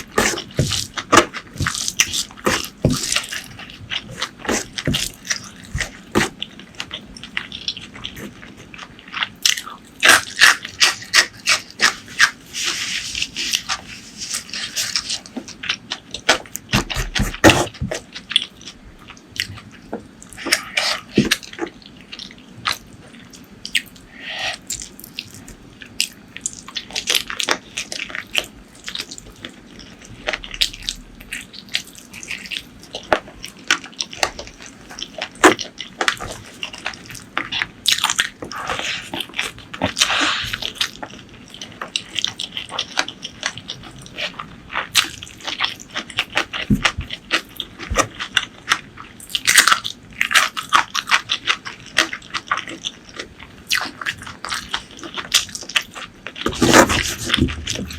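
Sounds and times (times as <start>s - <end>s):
wet chewing and lip smacking: 18.0s - 57.9s.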